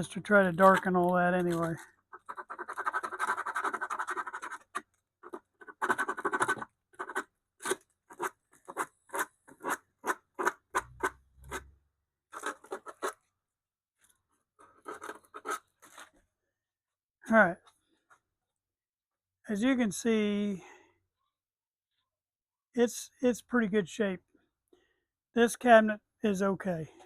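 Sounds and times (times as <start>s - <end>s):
sandpaper scratching on wood: 2.1s - 11.7s.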